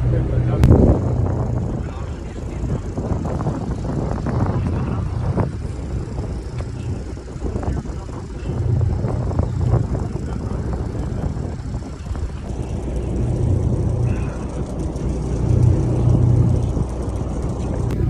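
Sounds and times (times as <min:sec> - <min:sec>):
boat engine rumbling: 0:00.0 - 0:18.0.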